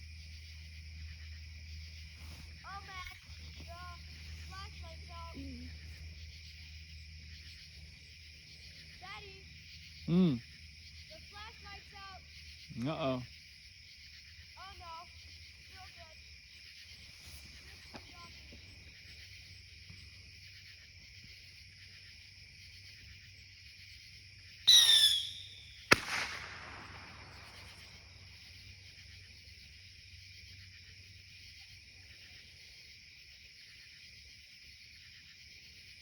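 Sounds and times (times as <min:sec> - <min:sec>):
crickets chirping: 0:00.0 - 0:36.0
firework whistle: 0:24.7 - 0:27.1
firework bang: 0:24.7 - 0:27.8.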